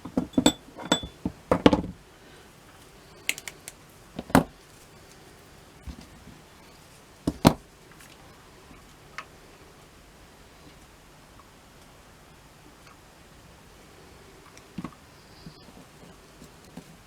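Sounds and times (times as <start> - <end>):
light clicks: 3.2 - 3.8.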